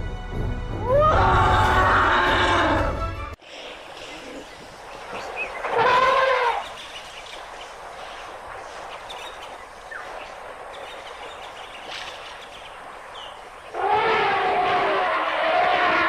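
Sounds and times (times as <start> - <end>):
elephant trumpeting: 0.9 - 3.0, 5.6 - 6.8, 13.7 - 16.0
faint bird chirps: 3.6 - 13.8.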